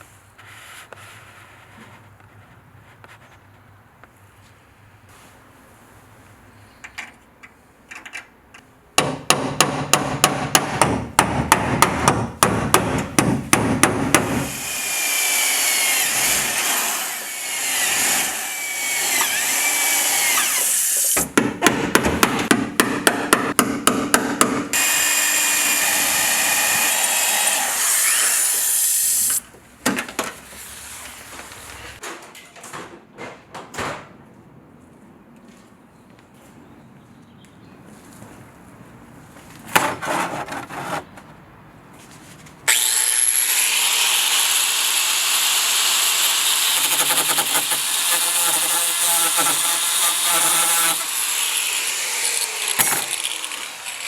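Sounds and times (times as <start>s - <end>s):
grinder whirring: 14.4s - 21.2s, 24.7s - 29.4s, 42.7s - 54.0s.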